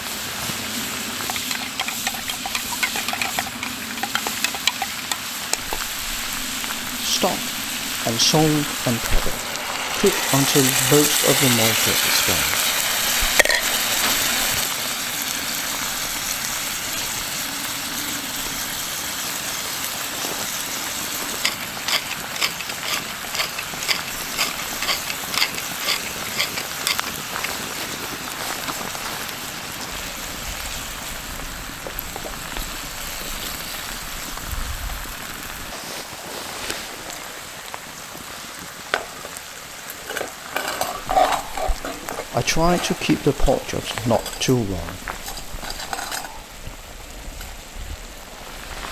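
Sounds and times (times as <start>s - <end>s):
vegetables sizzling in a pan: 0.0s - 42.9s, 45.0s - 48.9s
sharp crackles and pops: 0.5s - 14.8s, 19.8s - 43.0s.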